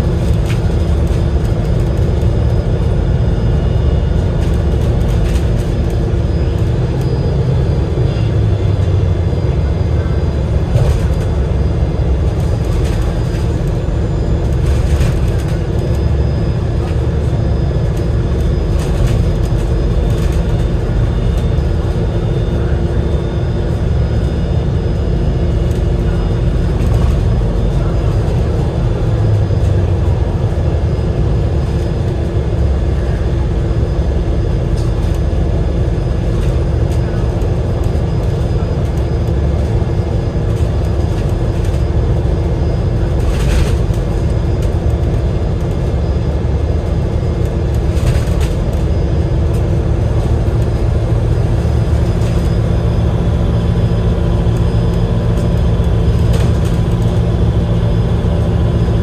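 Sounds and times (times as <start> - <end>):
bus engine rumble: 0.0 - 59.0
steady hum: 39.2 - 59.0.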